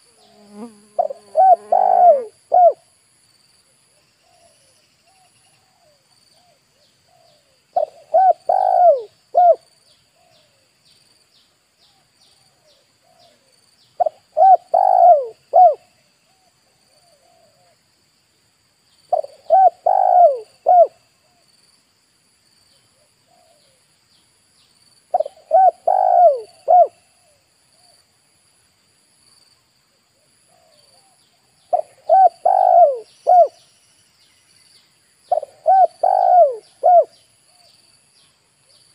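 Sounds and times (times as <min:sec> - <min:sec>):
dove cooing: 0:01.0 - 0:02.8, 0:07.1 - 0:09.6, 0:12.6 - 0:15.9, 0:19.1 - 0:21.0, 0:25.1 - 0:27.4, 0:30.5 - 0:33.6, 0:35.3 - 0:37.2.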